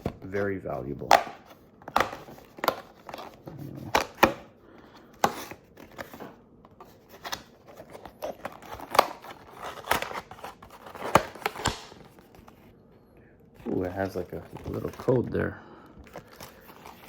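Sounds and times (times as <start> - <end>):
cardboard box being opened: 5.3 - 12.6.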